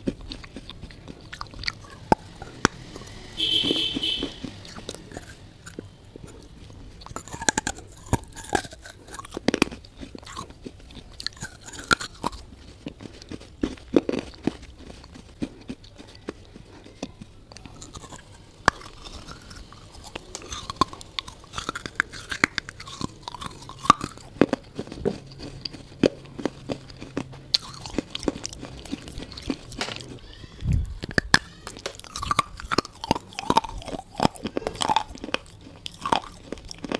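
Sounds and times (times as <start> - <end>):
person crunching hard pieces: 0.0 - 36.9
soft mouth sounds: 0.0 - 36.9.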